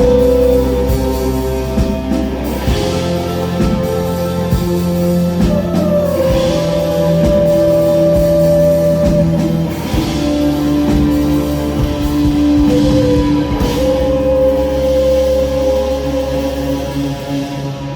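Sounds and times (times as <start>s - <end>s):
long held guitar notes: 0.0s - 17.9s
steady bass: 0.0s - 17.9s.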